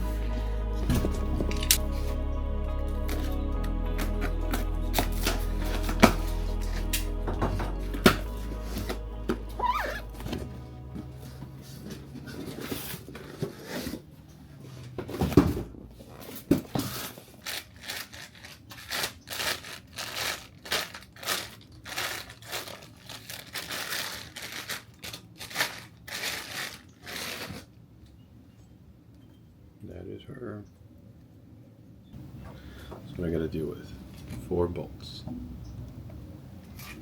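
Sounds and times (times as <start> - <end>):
packaging crinkling and tearing: 16.2 - 27.7.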